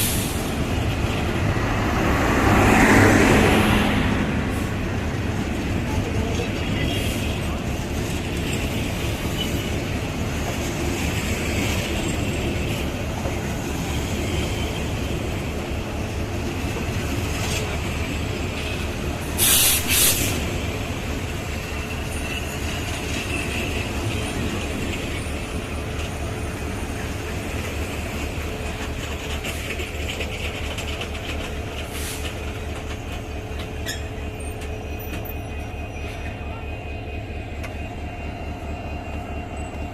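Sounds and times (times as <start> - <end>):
train wheels on rails: 0.0 - 39.9
air hiss: 19.4 - 20.4.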